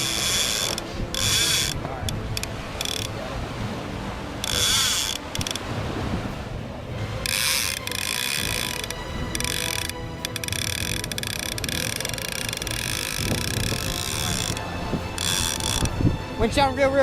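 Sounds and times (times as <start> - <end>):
fishing reel clicker buzzing: 0.0 - 3.1, 4.4 - 5.6, 7.2 - 15.9.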